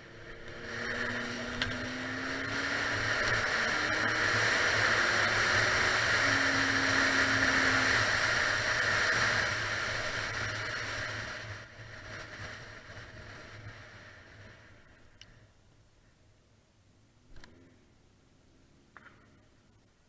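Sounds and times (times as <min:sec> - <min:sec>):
motorcycle engine running: 0:00.0 - 0:15.2.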